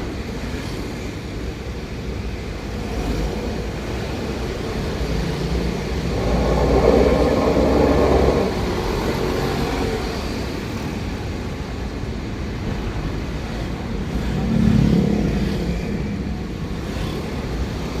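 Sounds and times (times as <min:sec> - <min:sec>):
engine growling rumble: 0:02.7 - 0:10.2.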